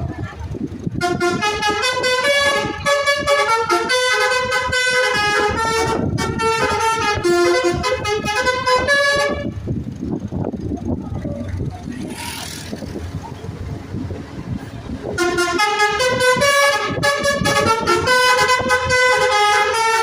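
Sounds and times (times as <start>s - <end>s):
low vehicle rumble: 0.0s - 20.0s
bus horn playing melodic tune: 0.8s - 9.7s, 15.0s - 20.0s.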